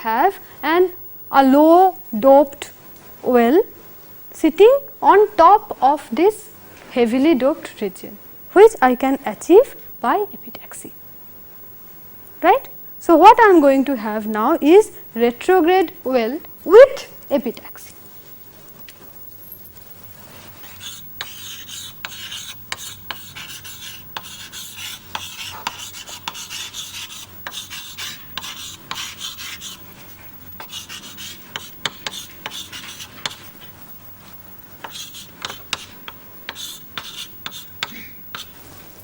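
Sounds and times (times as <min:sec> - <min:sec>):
pen scratching on writing surface: 0:20.3 - 0:29.9, 0:30.6 - 0:33.6, 0:34.8 - 0:38.6.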